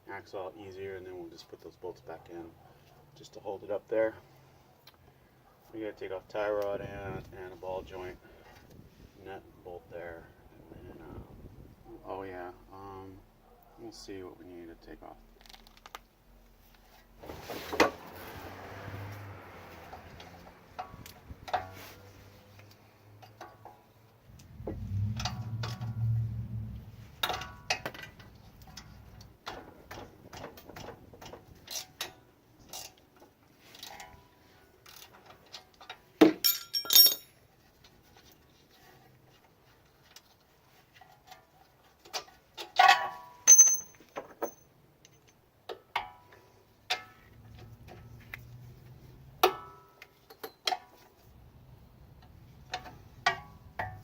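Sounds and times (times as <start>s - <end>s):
low hum: 24.4s - 27.2s
tools clinking on steel: 34.9s - 37.4s, 42.7s - 45.4s
metal ringing ping: 43.5s - 44.6s.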